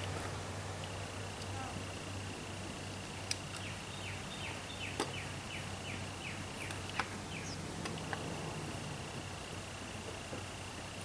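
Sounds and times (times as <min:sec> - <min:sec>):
steady high buzz: 0:00.0 - 0:11.0
small bird whistling song: 0:03.6 - 0:07.6.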